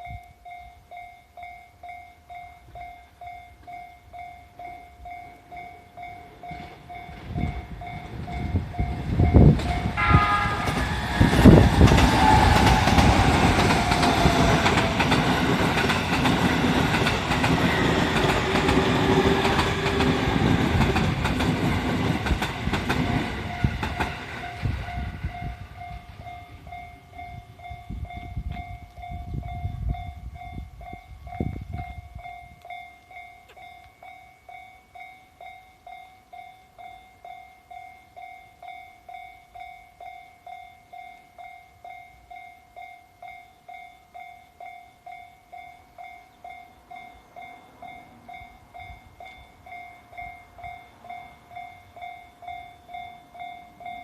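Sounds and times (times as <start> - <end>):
level-crossing bell dinging: 0.0 - 16.2, 22.5 - 54.0
train wheels rumbling and clacking: 6.2 - 30.7
train horn note: 9.8 - 15.2.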